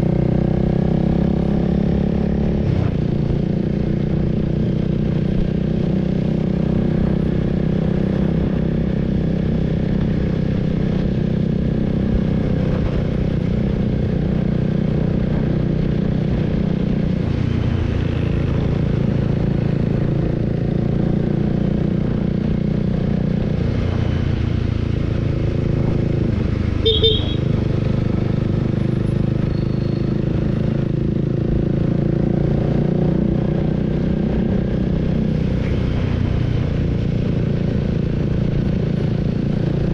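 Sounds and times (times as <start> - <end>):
motorcycle engine running: 0.0 - 39.9
horn toot: 26.8 - 27.5.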